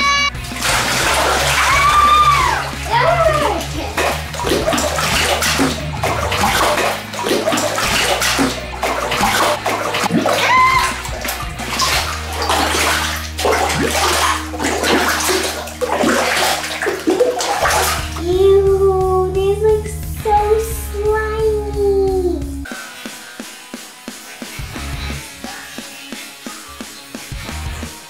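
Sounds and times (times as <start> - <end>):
background music: 0.0 - 28.0
wet slime squelching: 0.4 - 22.7.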